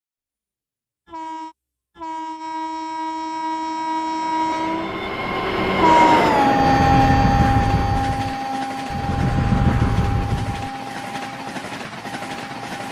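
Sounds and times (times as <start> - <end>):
train horn blasts: 1.1 - 10.8
train rumbling: 3.8 - 12.9.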